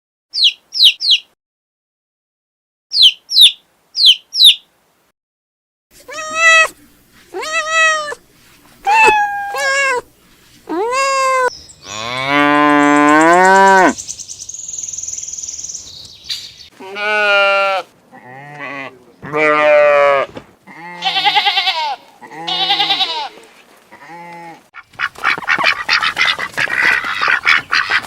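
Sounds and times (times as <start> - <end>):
high bird chirps: 0.4 - 1.3, 2.9 - 4.6, 11.5 - 16.7
cat meowing: 6.0 - 8.2, 8.8 - 10.1, 10.7 - 11.5
cow mooing: 11.9 - 14.0.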